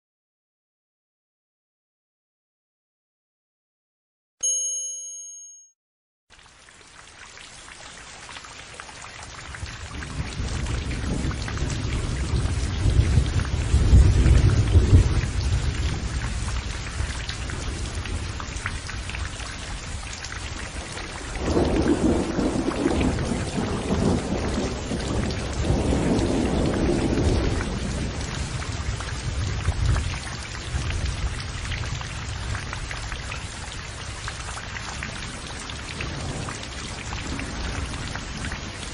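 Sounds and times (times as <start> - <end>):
ringing chime: 4.4 - 5.7
heavy rain: 6.3 - 38.9
rolling thunder: 9.8 - 18.9, 20.8 - 32.7, 35.1 - 38.9.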